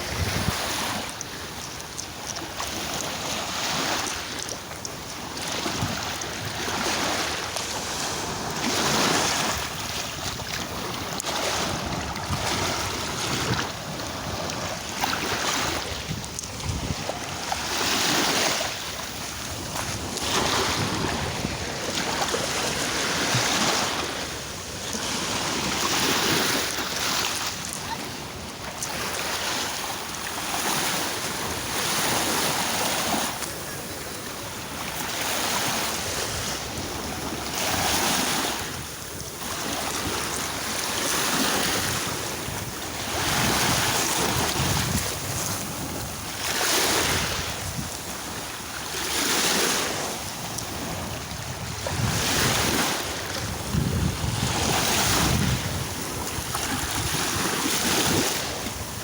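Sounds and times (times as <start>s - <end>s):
wind buffeting microphone: 0.0s - 1.1s, 8.1s - 24.0s, 41.7s - 48.5s, 50.2s - 59.0s
sea waves breaking on shore: 0.0s - 59.0s.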